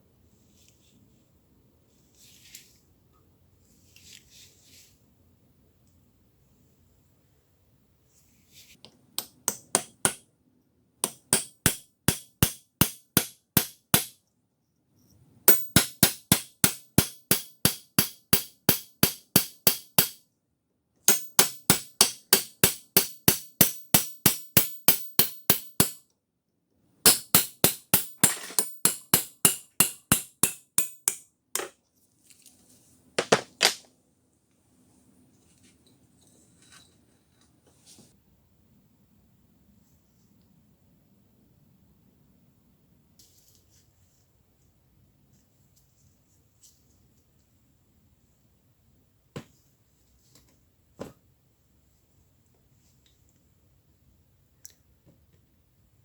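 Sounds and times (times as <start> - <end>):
hammer ringing on metal: 11.0 - 14.1, 15.5 - 20.2, 21.1 - 26.0, 27.1 - 31.2.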